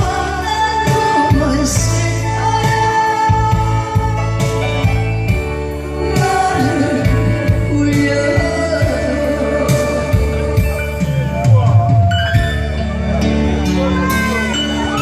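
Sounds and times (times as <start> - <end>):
woman singing: 0.0 - 4.7, 5.9 - 10.8
amplified accompaniment: 0.8 - 15.0
steady drum beat: 4.8 - 12.6.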